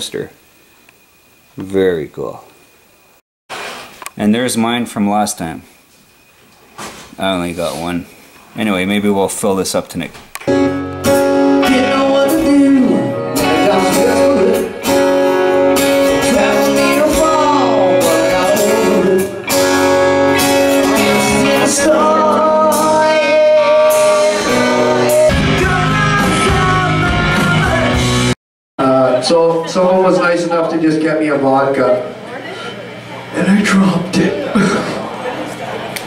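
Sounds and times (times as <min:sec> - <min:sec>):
rock music with singing: 0:11.0 - 0:28.4.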